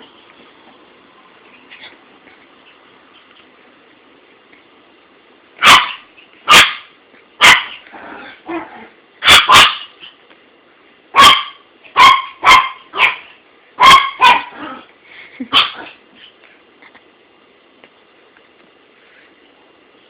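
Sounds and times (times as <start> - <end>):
dog barking: 5.6 - 7.8, 9.2 - 9.9, 11.2 - 14.6.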